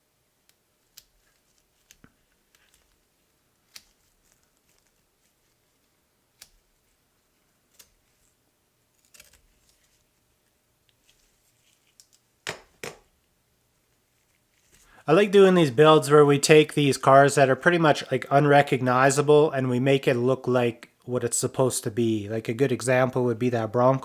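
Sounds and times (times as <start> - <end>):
masking tape crinkling and clicking: 0.4 - 10.2, 10.8 - 13.3
tape snapping: 3.6 - 5.0.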